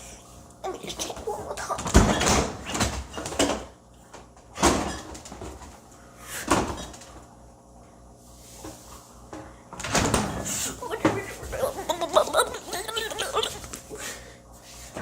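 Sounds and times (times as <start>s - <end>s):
rustling and clattering in fridge: 0.9s - 7.4s, 8.3s - 15.0s
fridge door opening and shutting: 1.1s - 7.3s, 9.7s - 13.8s.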